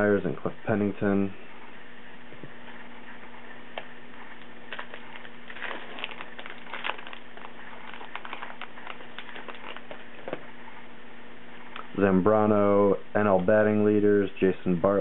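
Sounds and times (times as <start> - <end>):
wrapper crinkling: 4.6 - 10.5.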